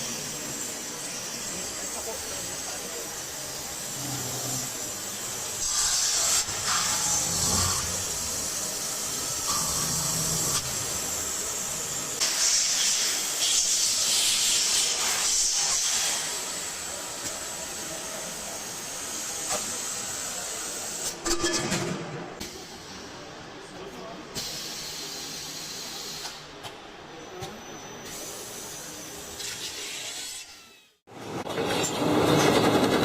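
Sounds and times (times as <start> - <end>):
loud hissing bursts: 0.0 - 21.2
steady noisy background: 0.0 - 33.0.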